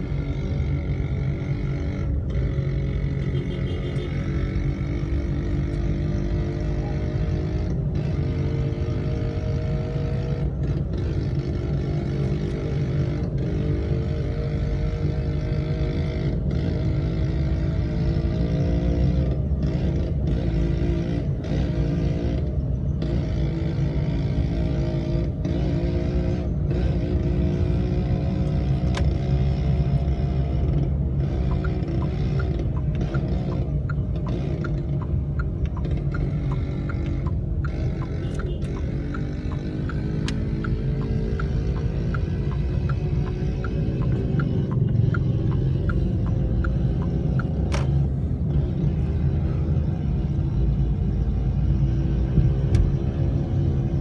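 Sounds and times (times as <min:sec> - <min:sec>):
scooter engine running: 0:31.8 - 0:48.6.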